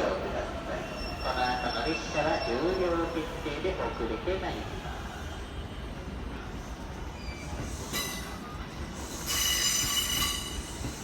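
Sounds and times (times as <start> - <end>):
electric train rumbling: 0.0 - 11.0
high brake squeal: 0.8 - 3.1, 7.1 - 11.0.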